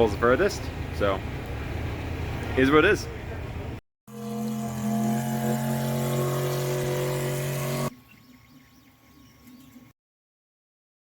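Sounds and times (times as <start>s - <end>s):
engine droning: 0.0s - 8.0s.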